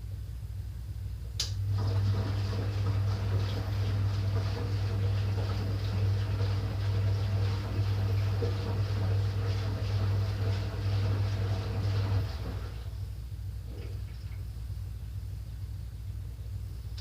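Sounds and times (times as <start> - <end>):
fill valve electric hum: 0.0 - 17.0
water rushing into drum: 1.7 - 13.0.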